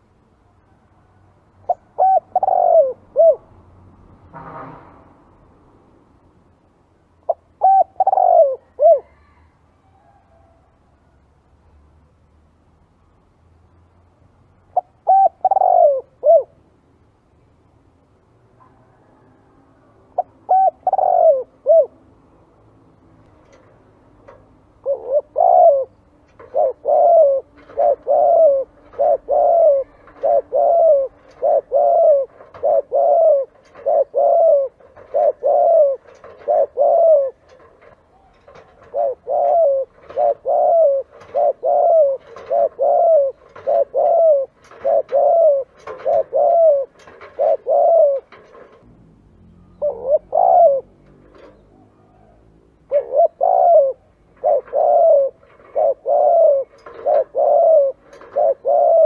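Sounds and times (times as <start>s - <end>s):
dove cooing: 1.6s - 3.6s, 7.3s - 10.2s, 14.7s - 16.6s, 18.6s - 22.1s, 23.5s - 48.8s, 49.6s - 59.0s.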